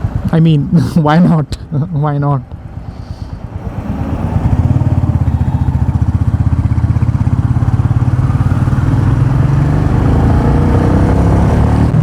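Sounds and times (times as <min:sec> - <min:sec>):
motorcycle engine running: 0:03.6 - 0:12.0.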